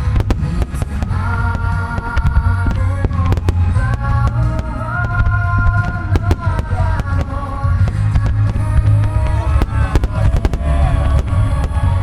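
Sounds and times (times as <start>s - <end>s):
deep booming: 0.0s - 12.0s
fireworks bangs and crackles: 0.0s - 12.0s
music over loudspeakers: 0.0s - 12.0s.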